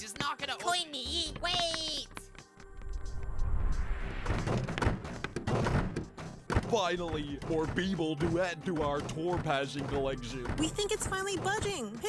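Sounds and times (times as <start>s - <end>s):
background music: 0.0s - 12.0s
low rumble: 2.6s - 4.8s
rising whoosh: 2.6s - 4.8s
cartoon thuds and knocks: 4.3s - 11.9s.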